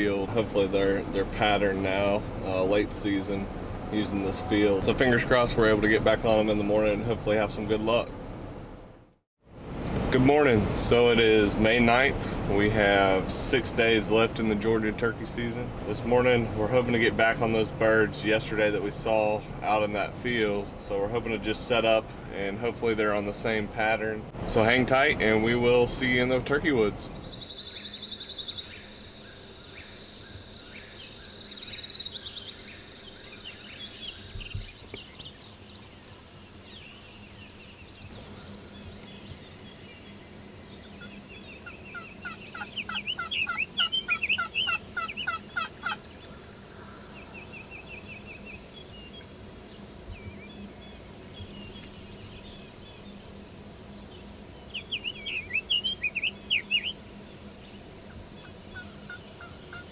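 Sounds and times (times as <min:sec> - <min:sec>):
songbirds chirping: 0:00.0 - 0:08.2, 0:10.2 - 0:59.9
turkey gobbling: 0:41.6 - 0:46.2, 0:58.4 - 0:59.9.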